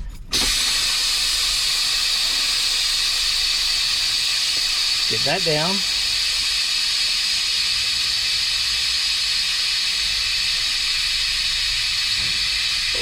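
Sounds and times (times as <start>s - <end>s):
air venting hiss: 0.2s - 13.0s.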